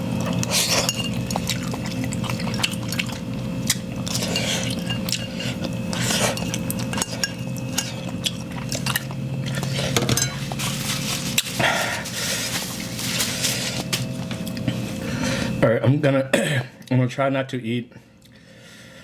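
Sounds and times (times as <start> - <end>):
steady low hum: 0.0 - 19.0
biting and chewing: 0.1 - 14.8
utensil clinking against bowl: 0.4 - 3.2, 4.0 - 9.1, 9.9 - 10.6.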